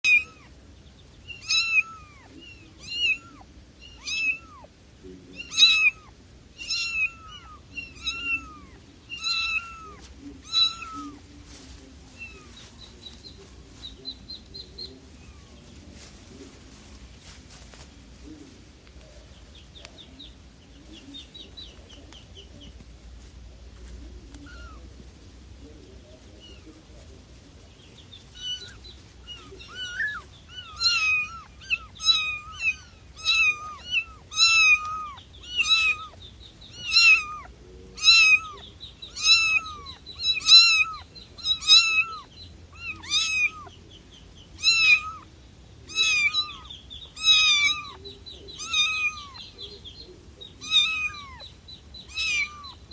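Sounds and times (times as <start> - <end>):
cat meowing: 0.0 - 0.6, 1.3 - 4.7, 5.3 - 11.2, 24.4 - 24.8, 28.4 - 43.8, 44.6 - 49.5, 50.6 - 52.9
faint high chirping: 0.0 - 52.9.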